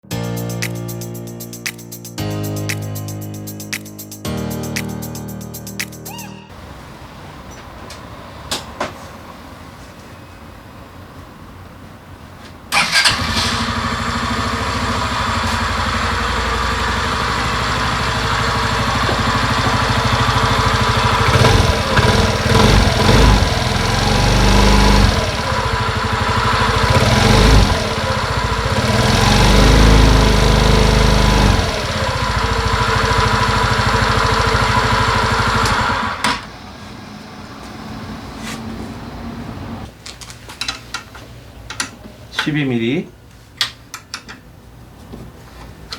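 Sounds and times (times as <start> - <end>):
scooter engine starting and revving: 12.7 - 37.1.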